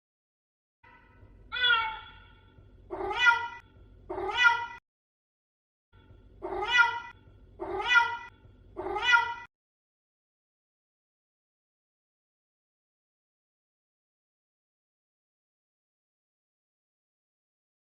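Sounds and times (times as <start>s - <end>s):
cat meowing: 1.5s - 4.8s, 6.4s - 9.5s.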